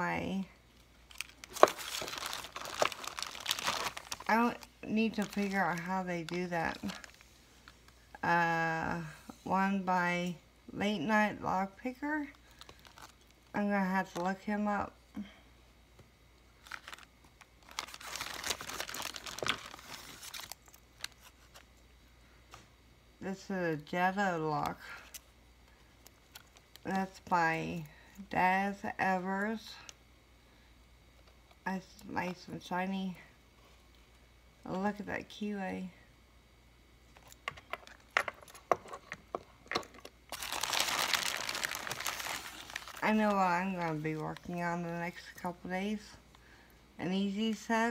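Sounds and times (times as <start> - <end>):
packing wrap crinkling: 1.0 - 8.1, 12.2 - 14.2, 16.6 - 21.7, 39.7 - 44.5.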